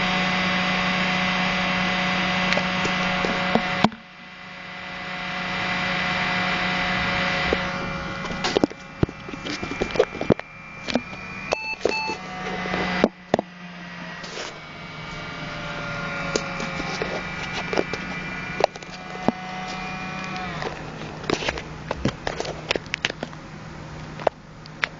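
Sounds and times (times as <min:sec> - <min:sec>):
laptop fan whining: 0:00.0 - 0:24.9.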